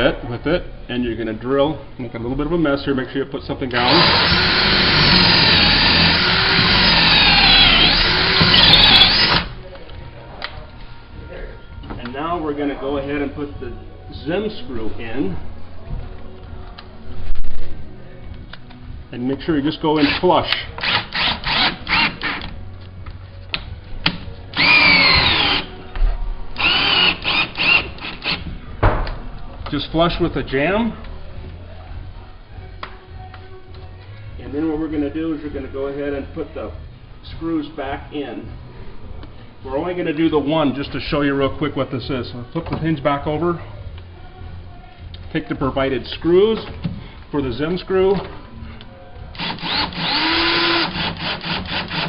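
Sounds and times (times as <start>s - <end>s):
power drill boring into wood: 3.8s - 9.6s, 20.8s - 22.4s, 24.6s - 25.7s, 26.6s - 28.4s, 49.4s - 52.0s.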